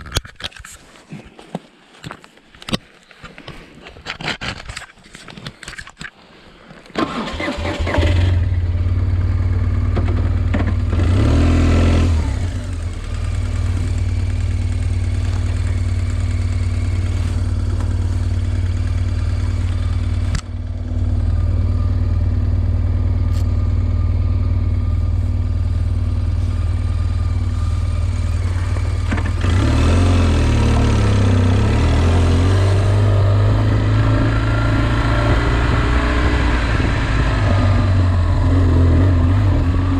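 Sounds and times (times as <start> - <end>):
vehicle engine running: 8.0 - 39.9.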